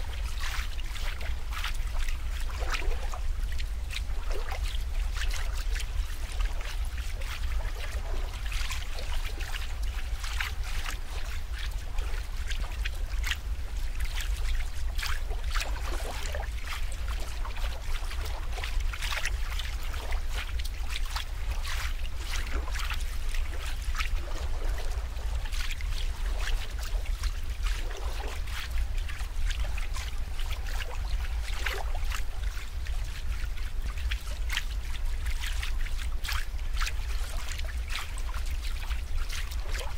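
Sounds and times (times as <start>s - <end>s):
steady low rumble: 0.0s - 39.9s
water trickling and splashing: 0.0s - 39.9s.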